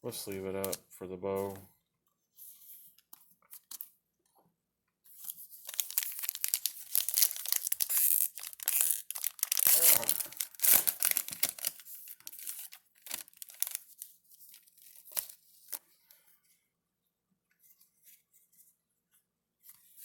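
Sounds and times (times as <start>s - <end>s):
foil wrapper tearing and crinkling: 5.1s - 15.8s.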